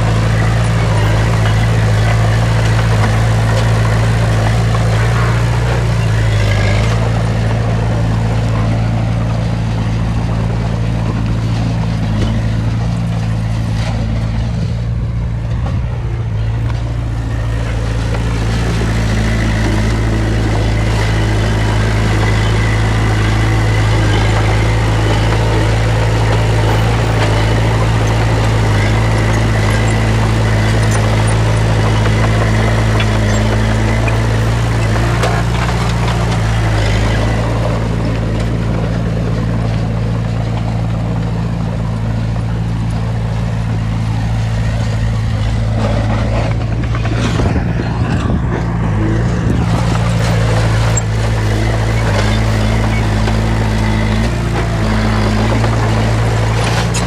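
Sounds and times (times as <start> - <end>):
rough high-pitched machine noise: 0.0 - 9.3, 17.1 - 39.2, 44.9 - 57.0
diesel engine humming: 0.0 - 57.0.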